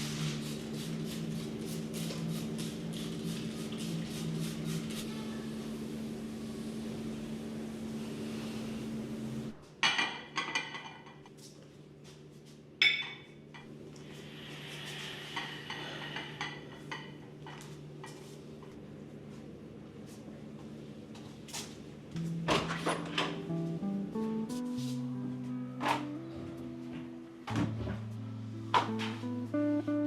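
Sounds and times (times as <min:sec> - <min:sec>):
steady low hum: 0:00.0 - 0:09.6, 0:13.5 - 0:30.0
dishes and glassware clinking: 0:09.8 - 0:11.3, 0:12.8 - 0:13.7.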